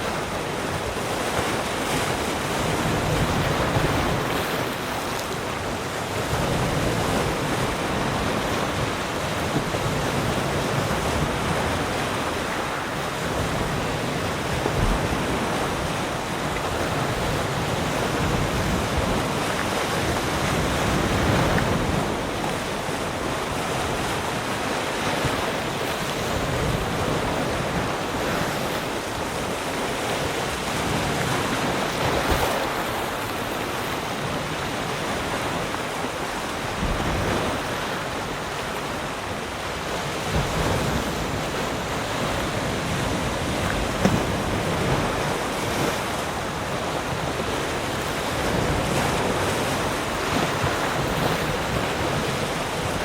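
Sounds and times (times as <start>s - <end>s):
ocean waves washing ashore: 0.0s - 53.0s.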